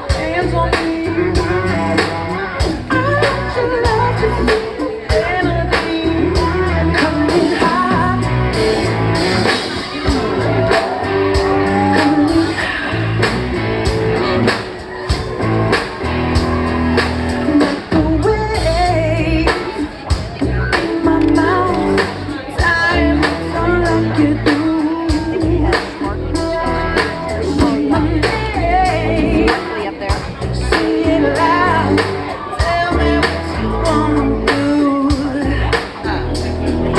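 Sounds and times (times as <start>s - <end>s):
man singing: 0.0s - 14.4s, 17.4s - 36.9s
drum beat: 0.0s - 36.9s
rock band playing: 0.0s - 36.9s.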